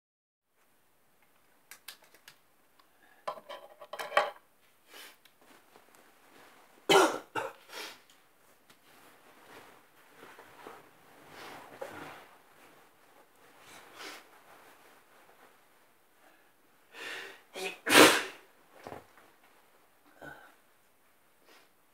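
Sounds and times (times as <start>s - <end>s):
person sneezing: 17.6s - 18.4s.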